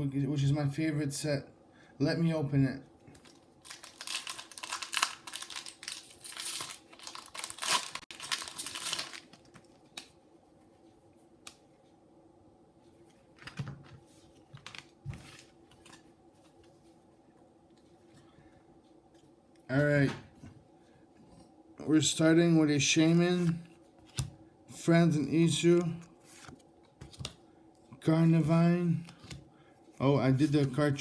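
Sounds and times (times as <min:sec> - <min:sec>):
foil wrapper crinkling and tearing: 0:03.2 - 0:10.1.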